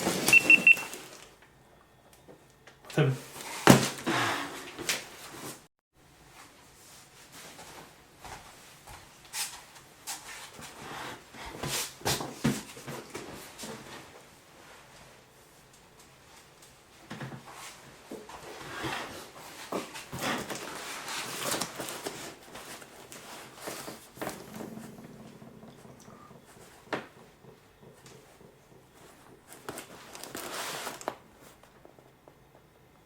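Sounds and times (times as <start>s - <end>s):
packing material rustling: 20.4s - 24.4s, 29.6s - 31.6s.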